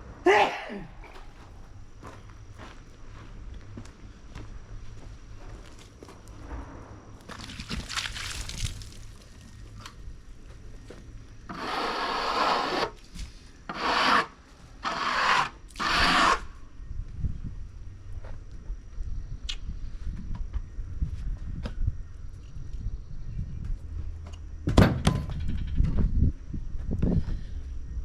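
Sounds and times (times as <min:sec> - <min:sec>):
rough rubbing scrapes: 0:11.5 - 0:13.0, 0:13.7 - 0:16.4.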